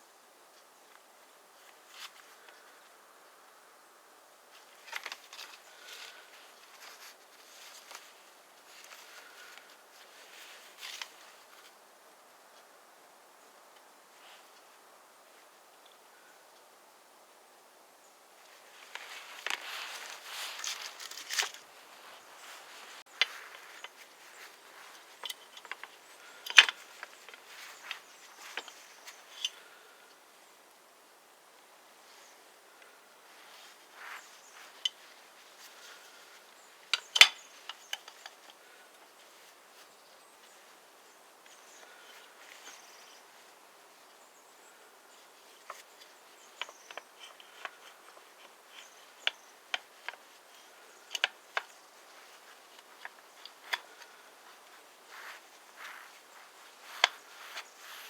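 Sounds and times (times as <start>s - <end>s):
small objects clicking and rustling: 4.8s - 11.7s, 18.5s - 29.6s, 33.6s - 38.7s, 45.1s - 58.0s
small clicks and taps: 45.6s - 54.2s.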